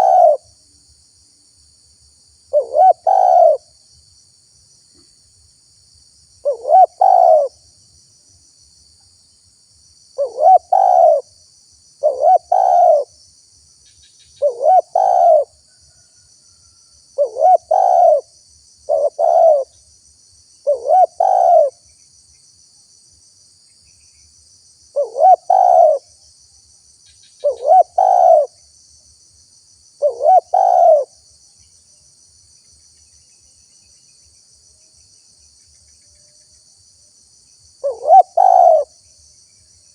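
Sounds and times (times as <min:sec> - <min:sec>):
dove cooing: 0:00.0 - 0:00.5, 0:02.5 - 0:03.6, 0:06.4 - 0:07.6, 0:10.2 - 0:11.3, 0:12.0 - 0:13.1, 0:14.4 - 0:15.6, 0:17.2 - 0:18.3, 0:18.9 - 0:19.7, 0:20.6 - 0:21.8, 0:25.0 - 0:26.1, 0:27.4 - 0:28.6, 0:30.0 - 0:31.1, 0:37.8 - 0:38.9
insect trill: 0:00.0 - 0:39.9.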